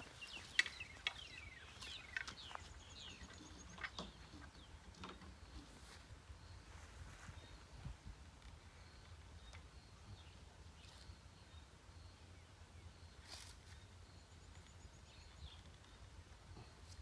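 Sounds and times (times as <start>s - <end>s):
faint bird chirps: 0.0s - 4.8s.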